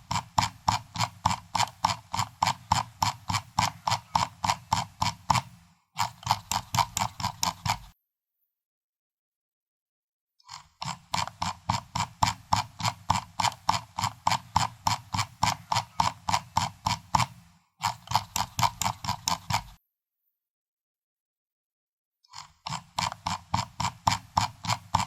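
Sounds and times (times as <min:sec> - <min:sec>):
mouse scroll wheel clicking: 0:00.0 - 0:08.0, 0:10.5 - 0:19.8, 0:22.3 - 0:25.0.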